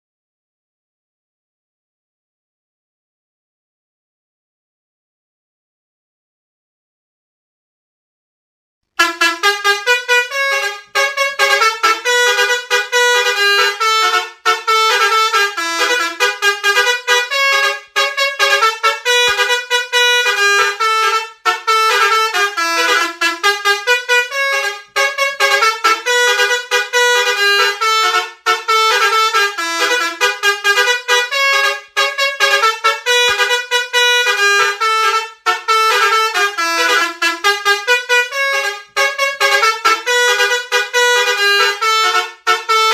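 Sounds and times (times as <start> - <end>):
multi-tone bus horn melody: 9.0 - 42.9.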